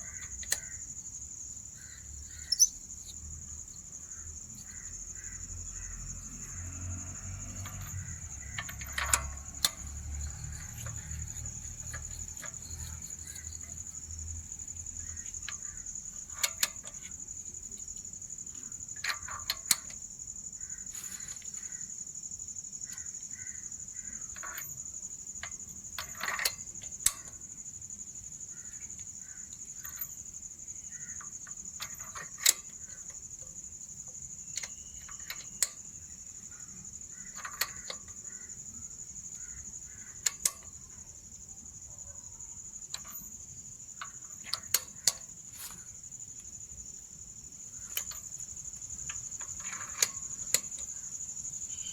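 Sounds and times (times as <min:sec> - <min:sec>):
hand tools clicking on metal: 0:00.0 - 0:00.8, 0:02.4 - 0:03.2, 0:07.6 - 0:14.0, 0:15.2 - 0:18.1, 0:31.2 - 0:33.2, 0:40.1 - 0:40.8, 0:44.0 - 0:45.9, 0:47.8 - 0:51.0
crickets chirring: 0:00.0 - 0:51.9.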